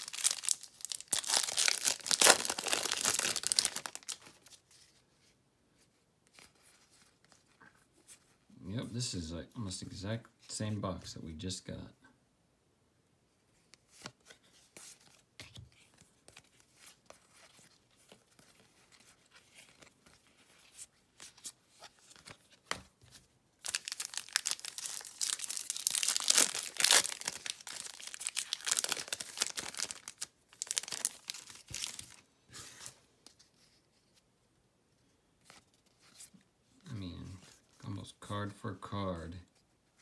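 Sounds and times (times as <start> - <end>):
wrapper tearing and crinkling: 0.0 - 4.5, 23.6 - 32.2.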